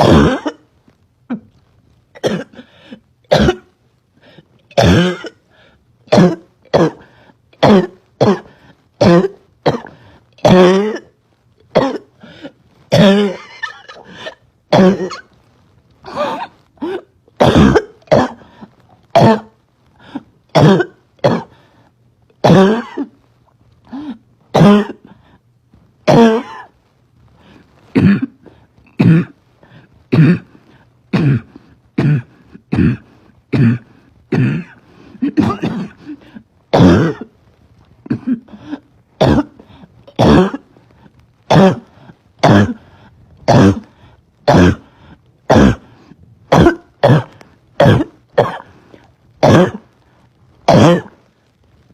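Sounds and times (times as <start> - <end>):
girl's barking cough: 0.0 - 0.6, 2.2 - 2.7, 3.3 - 3.7, 4.7 - 5.4, 6.1 - 11.1, 11.7 - 12.1, 12.9 - 15.3, 16.1 - 18.5, 19.2 - 19.5, 20.5 - 21.5, 22.4 - 23.1, 24.6 - 25.0, 26.1 - 26.7, 31.1 - 36.2, 36.8 - 37.3, 38.1 - 40.6, 41.5 - 41.8, 43.5 - 43.8, 44.5 - 44.8, 45.5 - 45.9, 46.5 - 48.8, 49.4 - 49.9, 50.7 - 51.2.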